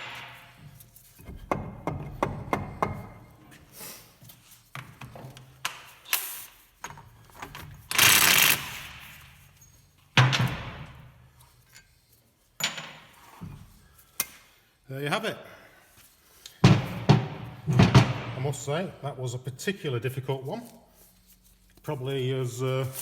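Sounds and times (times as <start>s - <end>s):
hammer knocking on metal: 1.3s - 3.2s, 16.6s - 18.4s.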